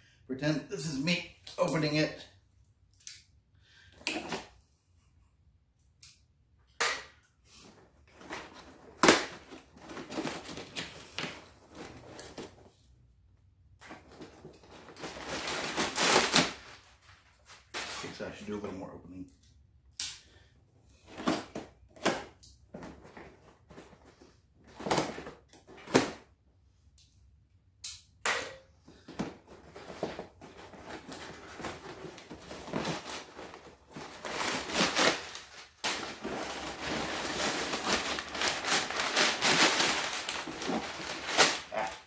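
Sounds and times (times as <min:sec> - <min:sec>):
packaging rustling and crinkling: 0:07.7 - 0:12.8, 0:13.9 - 0:18.1, 0:29.0 - 0:42.0
packaging tearing: 0:15.2 - 0:16.8, 0:32.6 - 0:42.0.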